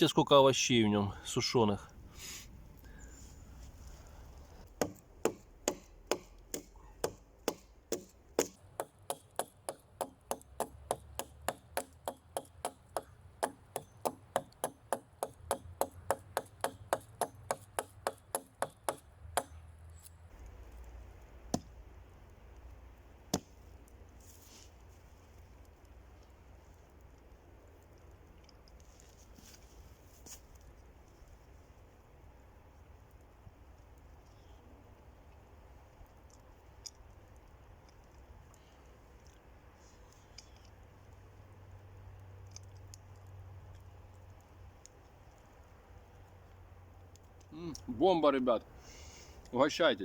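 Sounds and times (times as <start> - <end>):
sharp knocks: 4.8 - 19.6.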